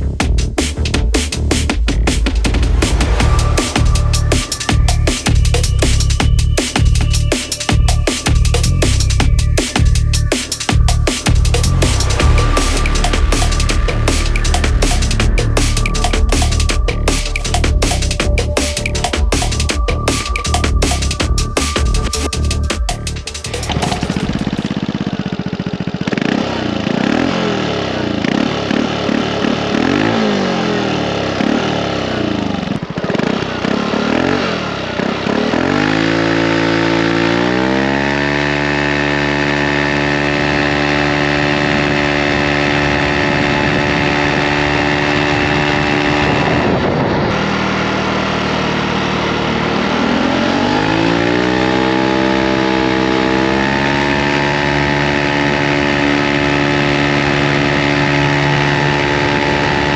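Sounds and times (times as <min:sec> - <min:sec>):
scooter engine revving: 0:23.6 - 0:59.9.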